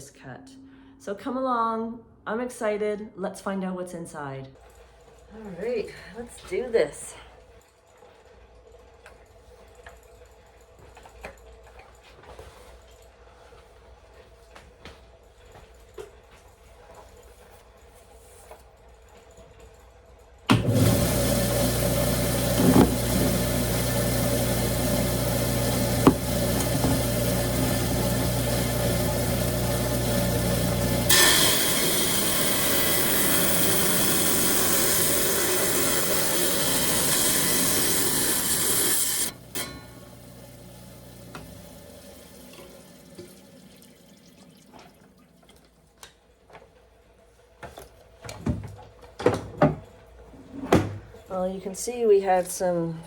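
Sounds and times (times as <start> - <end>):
saw motor humming: 20.6 - 44.4
diamond blade grinding stone: 21.0 - 40.6.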